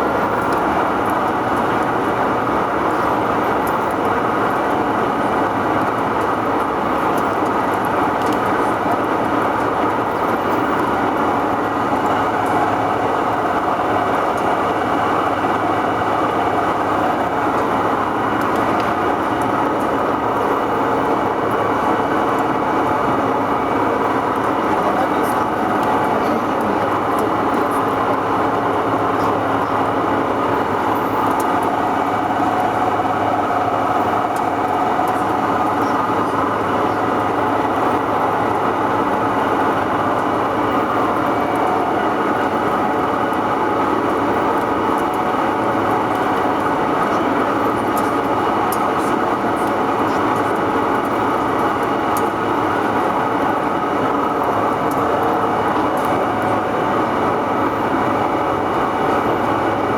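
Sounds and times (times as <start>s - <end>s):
lathe mechanical drone: 0.0s - 59.9s.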